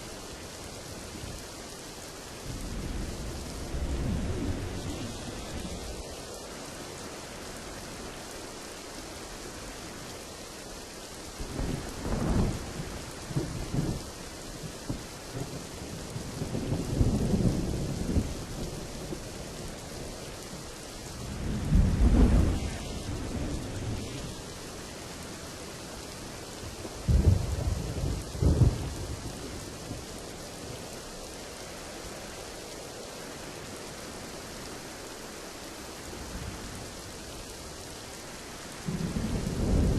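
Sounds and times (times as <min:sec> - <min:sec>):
heavy rain: 0:00.0 - 0:39.9
thunder rumbling: 0:21.2 - 0:30.9, 0:38.3 - 0:39.9.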